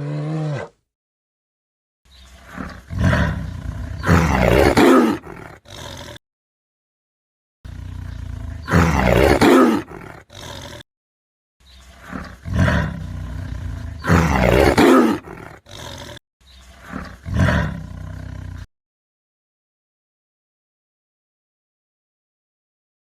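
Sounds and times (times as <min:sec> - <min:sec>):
big cat roaring: 0:00.0 - 0:00.8, 0:02.4 - 0:06.2, 0:07.7 - 0:10.8, 0:11.9 - 0:16.2, 0:16.8 - 0:18.7.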